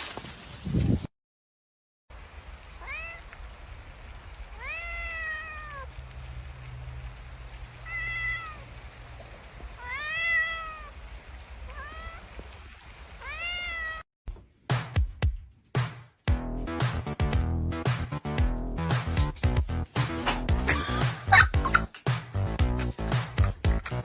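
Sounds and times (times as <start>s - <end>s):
cat meowing: 2.8s - 3.3s, 4.6s - 5.9s, 7.8s - 8.7s, 9.8s - 11.0s, 11.7s - 12.3s, 13.2s - 14.0s
loud music with sharp hits: 14.7s - 24.0s.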